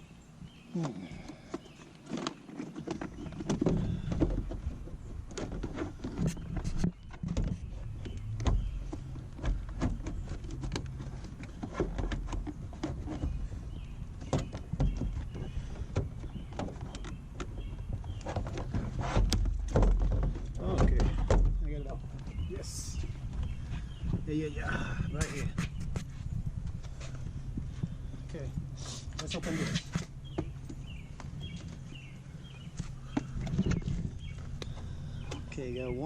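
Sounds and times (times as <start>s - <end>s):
plastic scraping: 0.8s - 36.0s.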